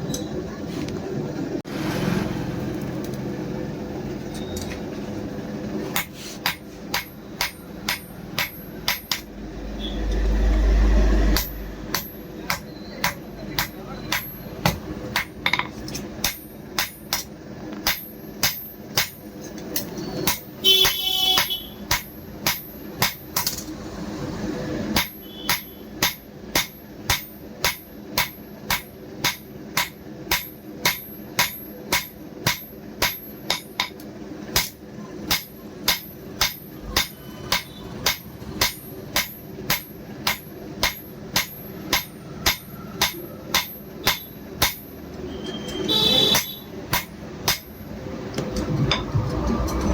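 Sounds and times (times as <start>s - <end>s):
hammer striking steel on anvil: 5.9s - 10.0s, 11.2s - 23.6s, 24.9s - 48.0s.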